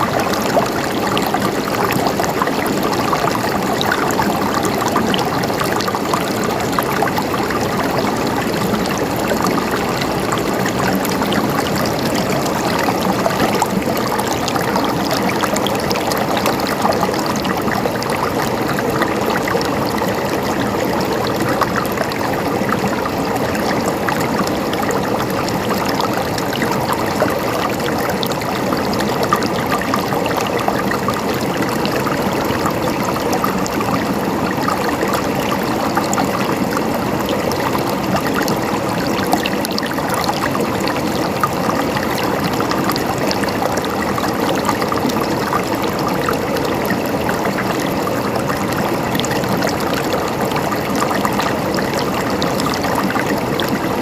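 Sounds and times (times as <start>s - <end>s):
water gurgling and trickling: 0.0s - 54.0s.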